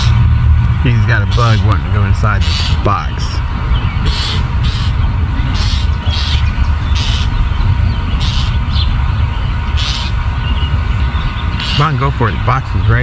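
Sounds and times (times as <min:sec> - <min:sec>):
bird giving harsh calls: 0:00.0 - 0:13.0
loud low rumble: 0:00.0 - 0:13.0.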